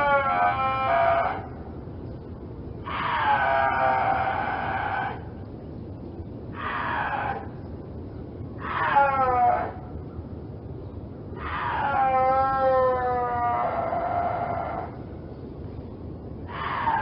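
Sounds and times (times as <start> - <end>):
high drawn-out animal calls: 0.0 - 2.2, 2.8 - 5.5, 6.5 - 7.8, 8.6 - 10.1, 11.4 - 15.3, 16.4 - 17.0.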